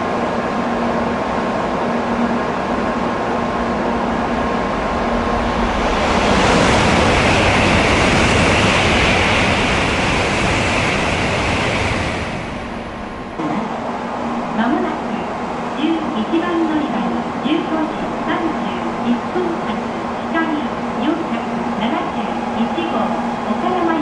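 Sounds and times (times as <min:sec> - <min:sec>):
train passing at speed: 0:00.0 - 0:24.0.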